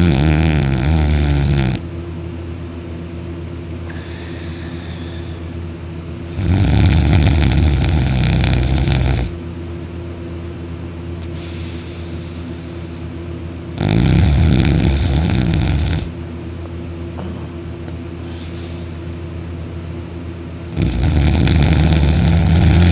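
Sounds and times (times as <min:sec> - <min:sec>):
deep loud snoring: 0:00.0 - 0:01.8, 0:06.3 - 0:09.4, 0:13.8 - 0:16.2, 0:20.7 - 0:22.9
steady low hum: 0:00.0 - 0:22.9.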